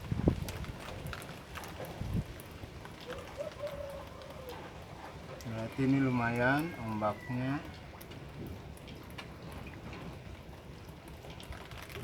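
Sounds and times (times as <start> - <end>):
wind buffeting microphone: 0.0 - 3.6, 7.7 - 12.0
light ticks of rain: 0.0 - 12.0.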